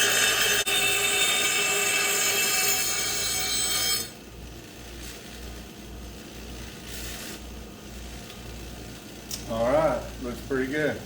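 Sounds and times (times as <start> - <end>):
power grinder whining: 0.0 - 4.1.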